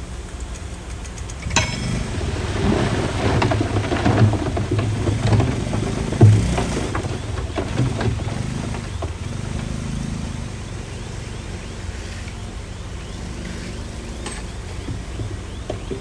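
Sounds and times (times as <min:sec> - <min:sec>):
diesel engine running: 0:00.0 - 0:16.0
sharp knocks: 0:01.4 - 0:09.4.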